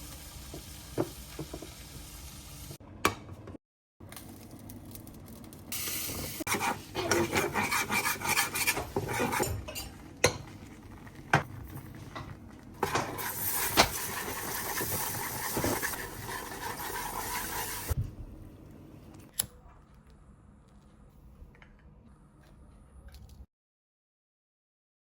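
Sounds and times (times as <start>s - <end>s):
kitchen knocks and clinks: 8.6s - 10.6s.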